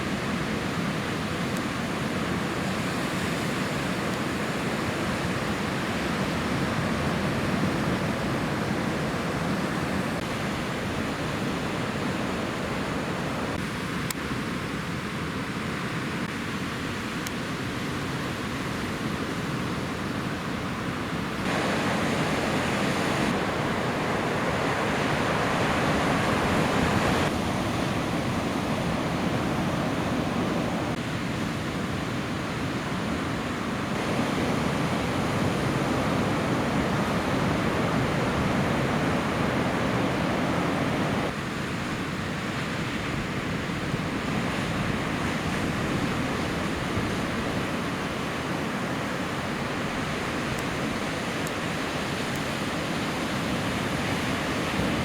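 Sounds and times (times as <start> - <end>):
ocean surf washing: 0.0 - 55.0
wind noise on microphone: 21.0 - 41.5.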